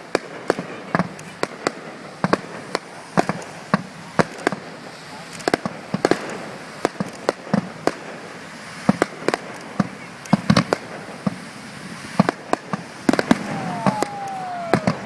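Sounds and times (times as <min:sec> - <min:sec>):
fireworks bangs and cracks: 0:00.0 - 0:15.0
steady hiss: 0:00.0 - 0:15.0.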